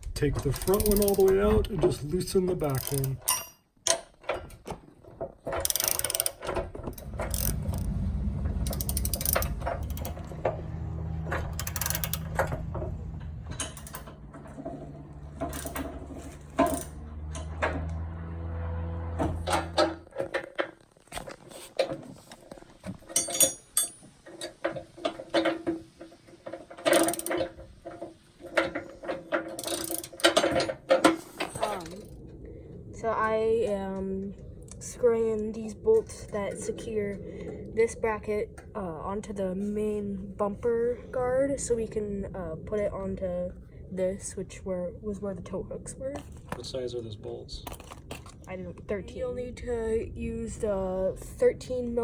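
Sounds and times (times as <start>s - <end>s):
ratchet wrench clicking: 0.5s - 1.4s, 2.7s - 4.0s, 5.6s - 8.0s, 8.6s - 10.4s, 11.4s - 12.7s, 26.9s - 27.4s, 29.6s - 30.5s
low steady hum: 5.8s - 20.4s, 21.9s - 52.0s.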